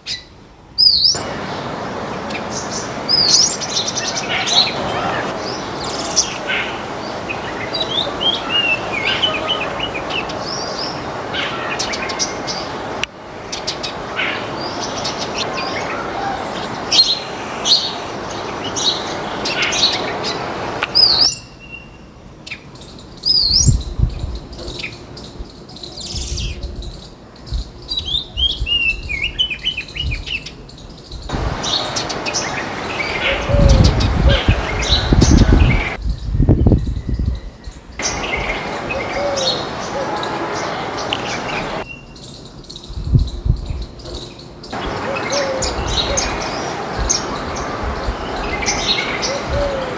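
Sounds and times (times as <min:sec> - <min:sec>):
songbirds chirping and twittering: 0:00.0 - 0:49.9.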